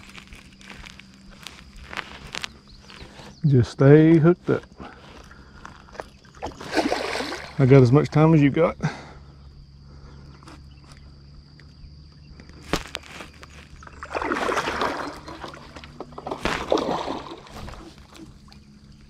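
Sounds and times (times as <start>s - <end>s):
steady low hum: 0.0s - 19.0s
water splashing and sloshing: 5.0s - 8.0s, 12.8s - 19.0s.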